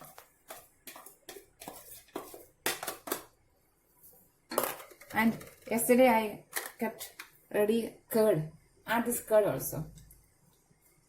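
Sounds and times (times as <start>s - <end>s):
spoon scraping a dish: 0.0s - 2.6s.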